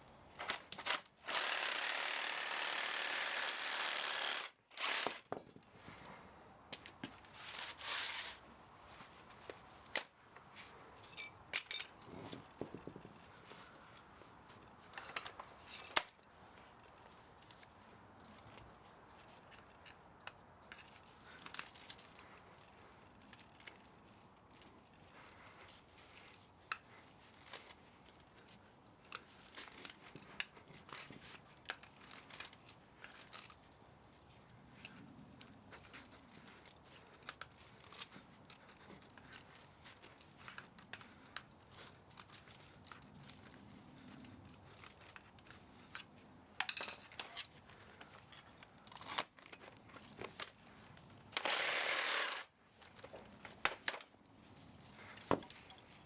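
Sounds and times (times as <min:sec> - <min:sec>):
hand tools clicking and snipping: 0:00.4 - 0:05.3, 0:51.3 - 0:52.5.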